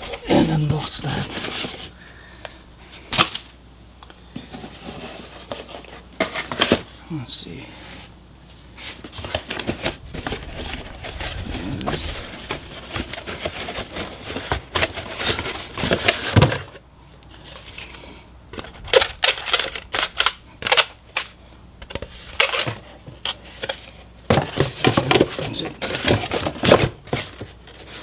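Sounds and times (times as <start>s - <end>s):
packaging rustling and crackling: 18.6s - 21.4s.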